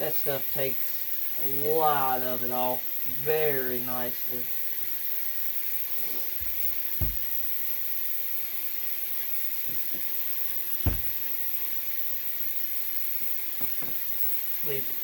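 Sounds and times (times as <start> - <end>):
steady hum and hiss: 0.0 - 15.0
low thumps: 6.4 - 7.4, 10.9 - 11.2.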